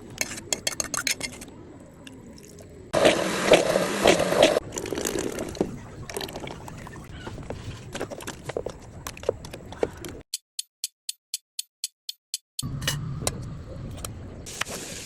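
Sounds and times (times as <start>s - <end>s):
kitchen clicks and rustles: 0.1s - 1.5s
liquid pouring: 2.2s - 7.0s.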